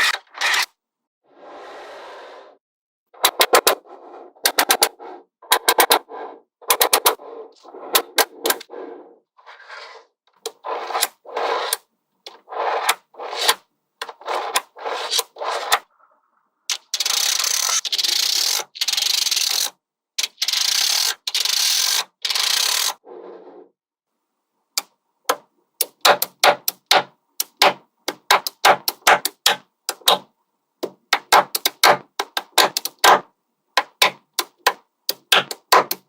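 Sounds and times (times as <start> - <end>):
magnetic balls clicking together: 16.7 - 23.0, 24.8 - 33.2, 33.8 - 36.0.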